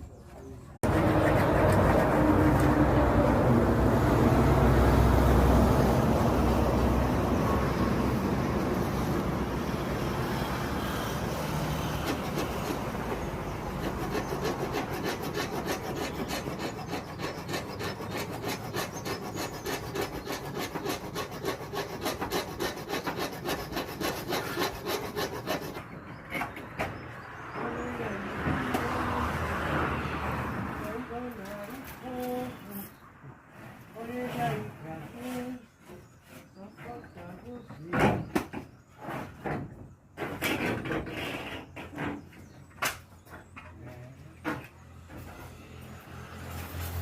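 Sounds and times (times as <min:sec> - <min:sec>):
hand-sawing wood: 0:00.8 - 0:26.6.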